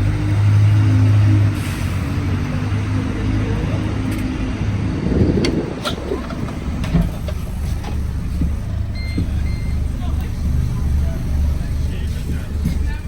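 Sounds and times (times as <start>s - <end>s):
bus drivetrain humming: 0.0s - 13.0s
short beeps: 9.0s - 9.8s.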